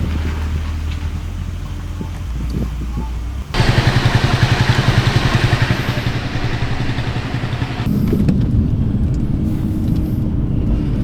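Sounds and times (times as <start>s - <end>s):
vehicle engine rumble: 0.3s - 11.0s
road noise hiss: 3.6s - 8.2s.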